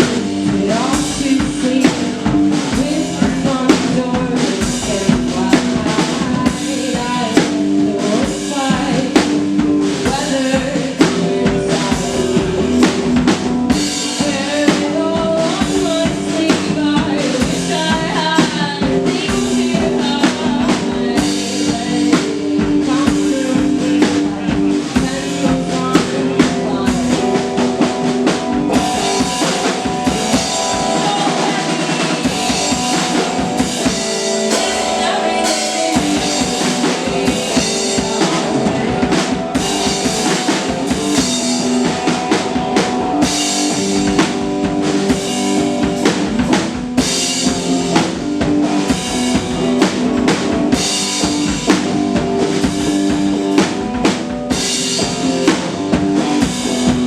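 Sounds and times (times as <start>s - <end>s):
drum kit beat: 0.0s - 57.0s
sustained guitar chords: 18.9s - 57.0s.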